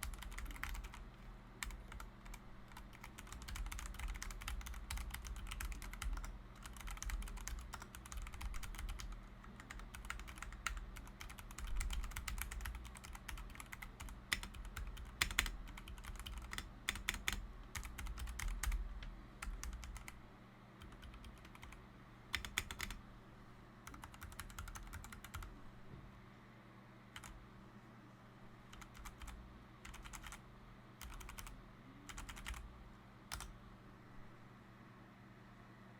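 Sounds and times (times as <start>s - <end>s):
mechanical keyboard typing: 0.0s - 20.2s, 20.8s - 23.0s, 23.9s - 25.5s, 27.2s - 27.4s, 28.7s - 30.4s, 31.0s - 32.7s, 33.3s - 33.5s.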